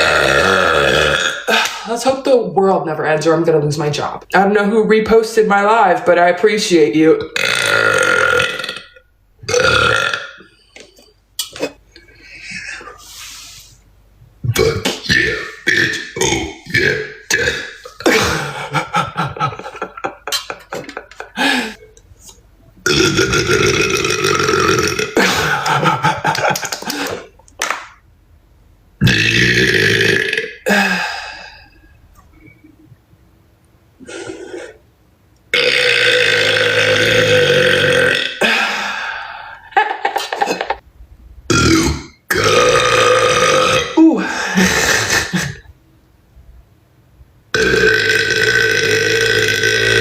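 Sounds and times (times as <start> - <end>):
woman burping loudly: 0.0 - 1.8, 7.2 - 10.9, 14.5 - 21.9, 22.8 - 27.3, 29.0 - 31.8, 35.5 - 40.8, 41.5 - 45.7, 47.6 - 50.0.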